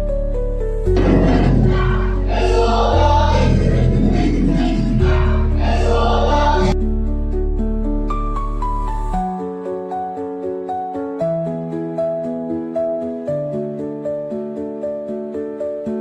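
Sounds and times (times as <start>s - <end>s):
keyboard chords: 0.0s - 15.8s
steady bass: 0.9s - 6.9s
choir-like vocals: 1.0s - 6.8s.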